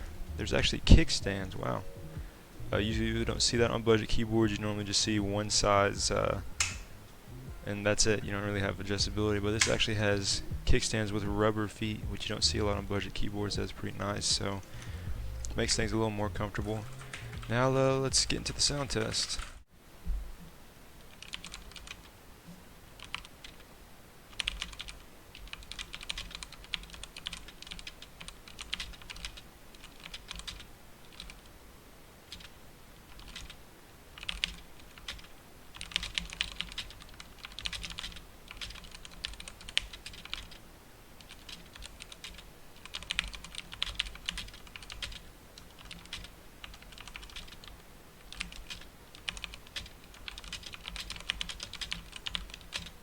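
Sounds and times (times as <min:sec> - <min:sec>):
mechanical keyboard typing: 0:16.6 - 0:17.6, 0:21.1 - 0:22.1, 0:23.0 - 0:23.6, 0:24.3 - 0:31.5, 0:32.3 - 0:32.5, 0:33.1 - 0:33.6, 0:34.2 - 0:40.6, 0:41.2 - 0:47.7, 0:48.3 - 0:53.0.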